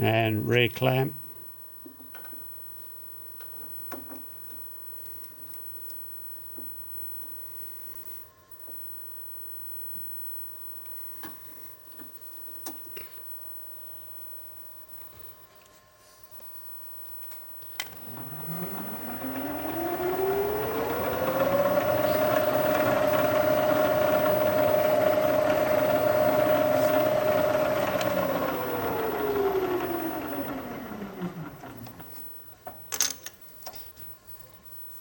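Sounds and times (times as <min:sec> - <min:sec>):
milling machine motor whine: 0:17.6 - 0:32.3.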